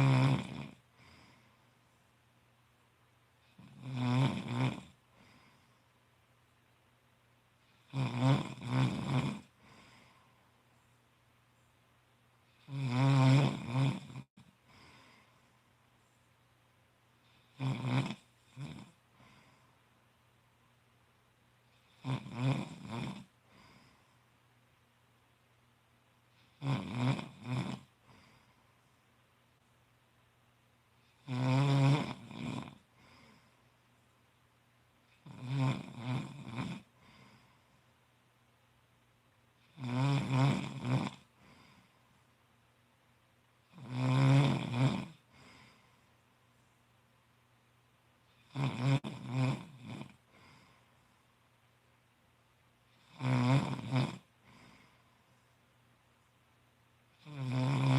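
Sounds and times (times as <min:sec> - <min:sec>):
man snoring: 0:00.0 - 0:01.4, 0:03.5 - 0:05.6, 0:07.8 - 0:10.1, 0:12.6 - 0:15.4, 0:17.4 - 0:19.0, 0:21.9 - 0:23.8, 0:26.5 - 0:28.4, 0:31.2 - 0:33.4, 0:35.2 - 0:37.5, 0:39.7 - 0:41.9, 0:43.7 - 0:45.8, 0:48.4 - 0:50.8, 0:53.0 - 0:55.0, 0:57.2 - 0:57.9.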